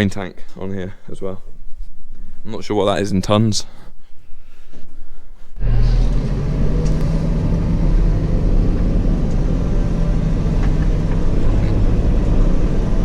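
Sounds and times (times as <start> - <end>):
farm vehicle engine running: 5.6 - 13.0.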